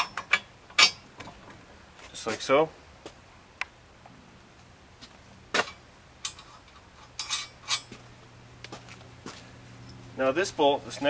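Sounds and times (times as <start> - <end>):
clinks of metal hardware: 0.0 - 1.1, 5.6 - 8.0.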